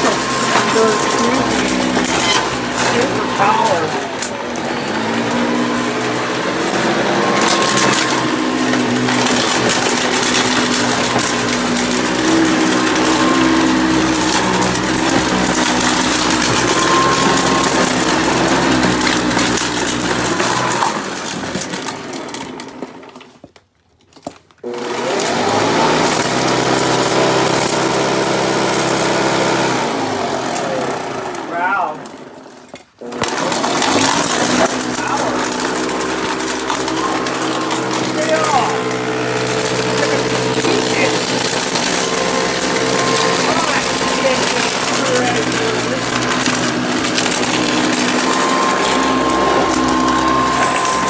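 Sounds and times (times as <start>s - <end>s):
vacuum cleaner running: 0.0s - 23.2s, 24.6s - 51.0s
debris crackling through vacuum: 33.4s - 51.0s.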